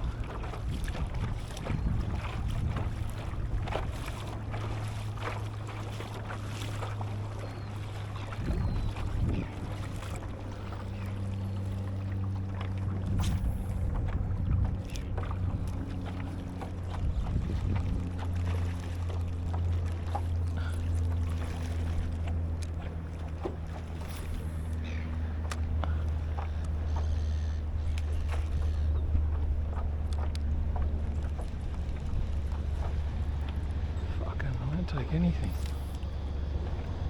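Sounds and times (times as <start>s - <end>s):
wind on microphone: 0.0s - 4.3s, 8.2s - 10.2s, 13.0s - 15.8s, 16.8s - 18.2s
low hum: 0.0s - 37.0s
water noise: 0.0s - 37.0s.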